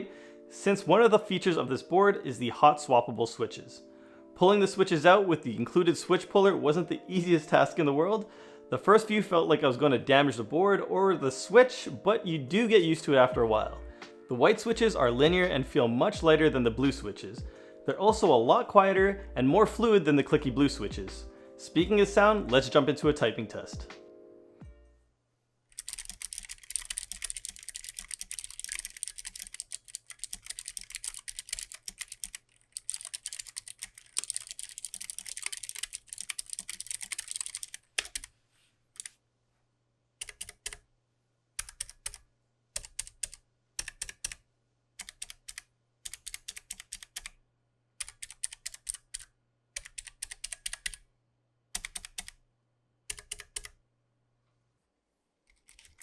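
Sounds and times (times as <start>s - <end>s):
mechanical keyboard typing: 25.8s - 38.3s, 40.2s - 40.8s, 41.6s - 42.2s, 42.8s - 44.4s, 45.0s - 47.3s, 48.0s - 51.0s, 51.8s - 52.4s, 53.1s - 53.8s, 55.5s - 56.0s.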